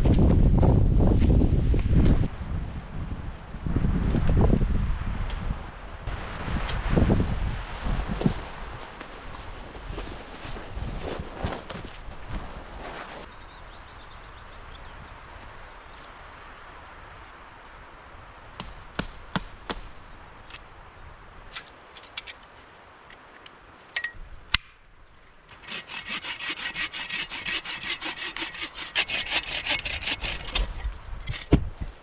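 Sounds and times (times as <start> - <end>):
hand saw cutting wood: 25.5 - 30.8.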